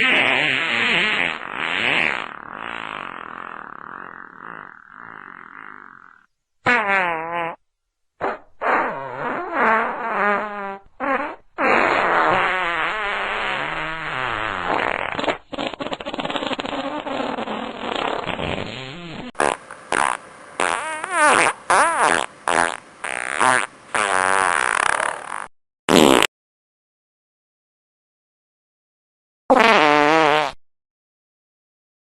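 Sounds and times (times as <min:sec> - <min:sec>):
fart sounds: 0:00.0 - 0:07.6, 0:08.2 - 0:26.3, 0:29.5 - 0:30.6.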